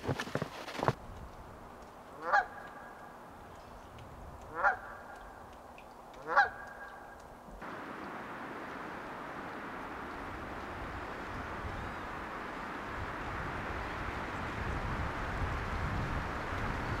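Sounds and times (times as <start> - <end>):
goose honking: 2.2 - 2.9, 4.5 - 5.0, 6.2 - 6.9.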